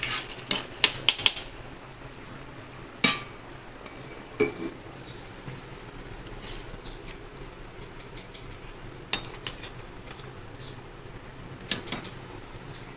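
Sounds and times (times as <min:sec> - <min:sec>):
spoon scraping a pan: 0:00.0 - 0:01.3, 0:07.8 - 0:10.3.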